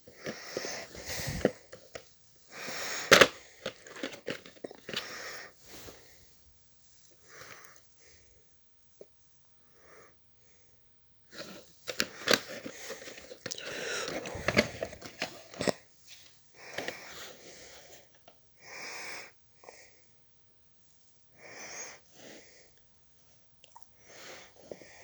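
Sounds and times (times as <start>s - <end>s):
tape case clicking and crinkling: 3.0s - 5.1s, 11.8s - 15.8s.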